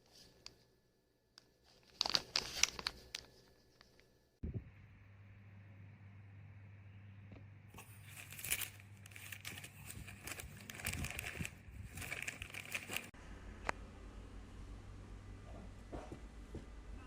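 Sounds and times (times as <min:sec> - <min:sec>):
crinkling and rustling: 0:01.4 - 0:04.3, 0:07.8 - 0:13.2.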